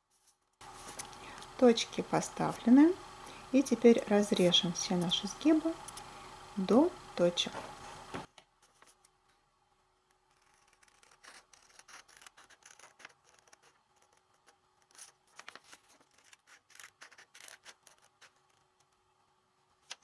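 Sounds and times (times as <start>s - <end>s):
paper rustling: 0.0s - 1.4s, 8.6s - 9.1s, 10.3s - 19.0s, 19.8s - 20.0s
scissors cutting paper: 10.3s - 18.7s.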